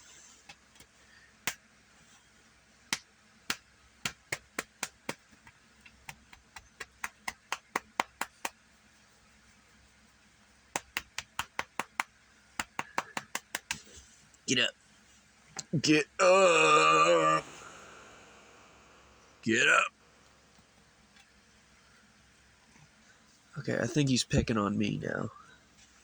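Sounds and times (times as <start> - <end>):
sharp irregular clicks: 10.8 - 13.8.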